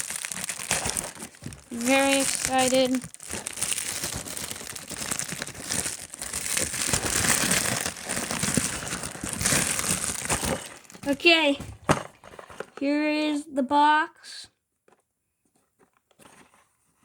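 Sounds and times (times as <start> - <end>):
packaging crinkling: 0.0 - 11.3.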